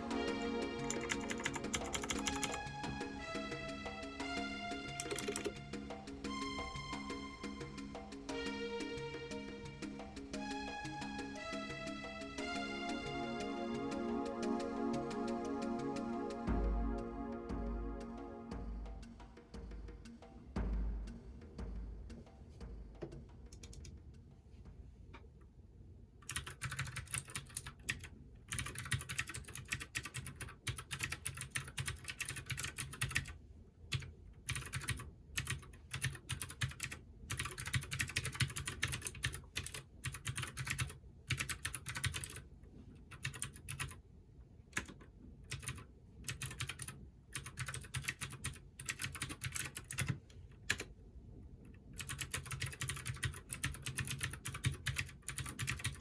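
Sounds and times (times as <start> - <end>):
clicky mechanical keyboard typing: 0.4 - 3.0, 5.0 - 5.6, 26.2 - 42.4, 43.1 - 44.0, 44.8 - 50.9, 52.0 - 56.0.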